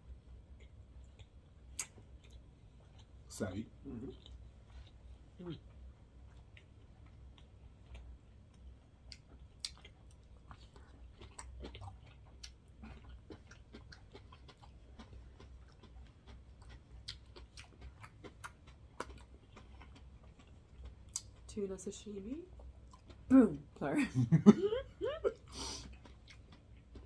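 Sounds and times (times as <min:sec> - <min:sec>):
people chewing: 0:06.2 - 0:21.5, 0:22.5 - 0:23.3, 0:24.2 - 0:27.0.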